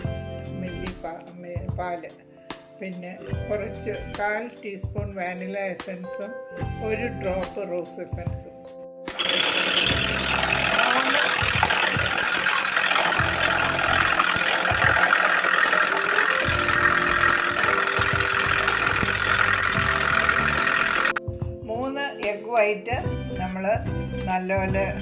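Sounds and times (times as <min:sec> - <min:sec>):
electric hand mixer running: 0:09.1 - 0:21.2.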